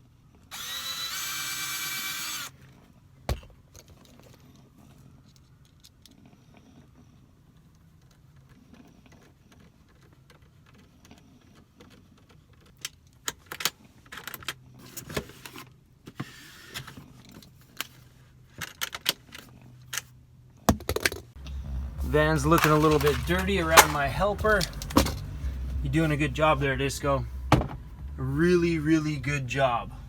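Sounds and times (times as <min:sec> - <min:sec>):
hand tools clicking and rattling: 0:22.3 - 0:25.4.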